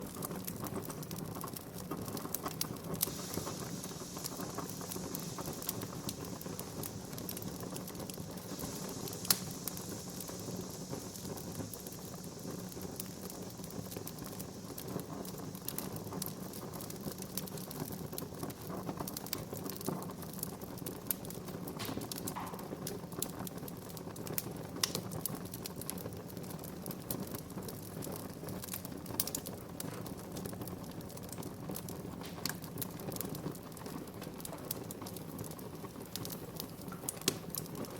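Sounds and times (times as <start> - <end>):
wood fire crackling: 0.0 - 37.9.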